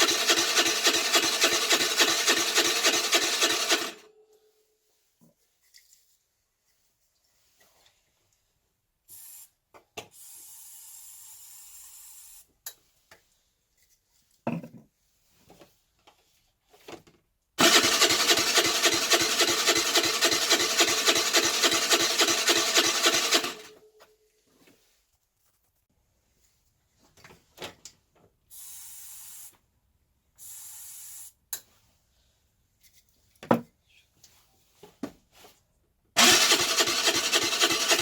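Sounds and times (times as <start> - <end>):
electric starter cranking engine: 0.0 - 4.1, 17.6 - 23.8, 36.2 - 38.0.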